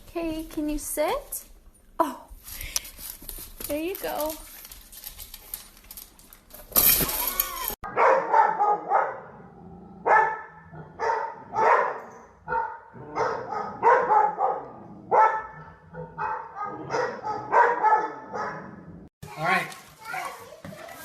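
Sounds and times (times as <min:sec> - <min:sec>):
dog barking: 0:07.9 - 0:09.4, 0:10.0 - 0:18.8.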